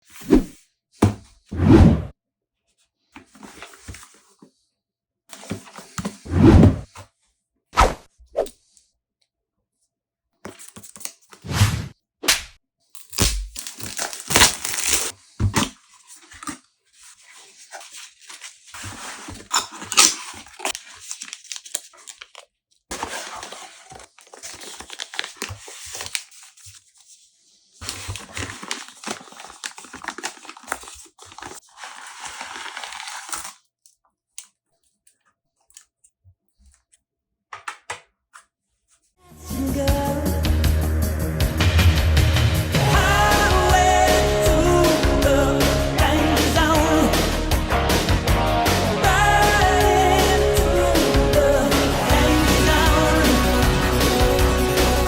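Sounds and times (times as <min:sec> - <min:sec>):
cardboard and plastic tearing: 0:12.9 - 0:27.1, 0:27.8 - 0:33.8.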